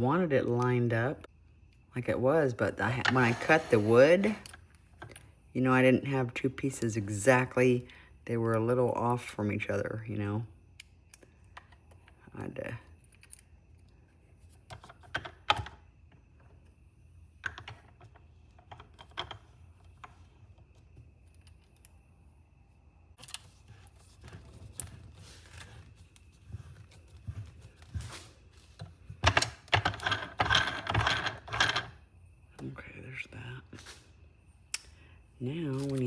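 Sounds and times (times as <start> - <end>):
small parts clicking and rattling: 17.4 - 20.3.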